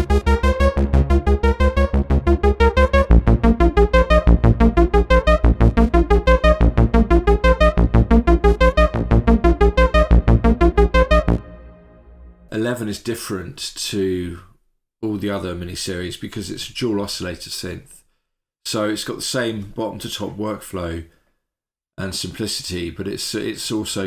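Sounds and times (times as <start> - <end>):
pulsing synth bass line: 0.0 - 12.5
synthesizer sequenced pattern: 0.0 - 12.5.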